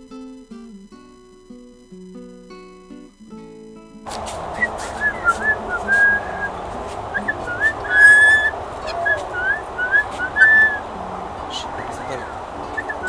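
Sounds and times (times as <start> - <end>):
bird sharp clicks: 4.1 - 13.0
bird whistling: 4.1 - 13.0.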